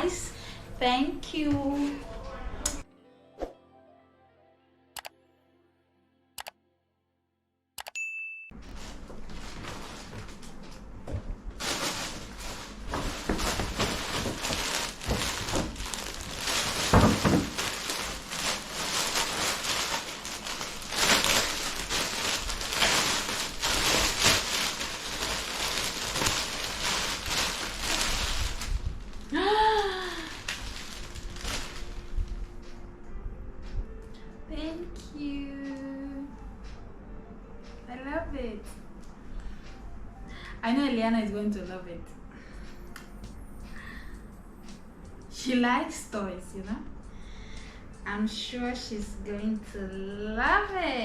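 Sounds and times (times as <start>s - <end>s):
gift wrap crinkling: 8.6s - 10.6s, 11.6s - 32.4s.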